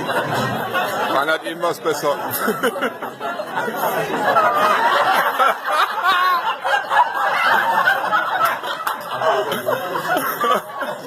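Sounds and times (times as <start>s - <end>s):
people laughing: 0.0s - 11.0s.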